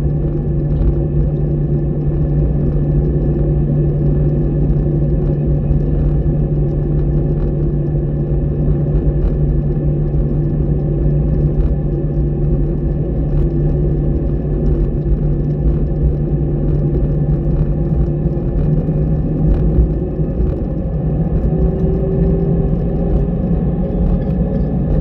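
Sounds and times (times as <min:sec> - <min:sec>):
jet engines running: 0:00.0 - 0:25.0.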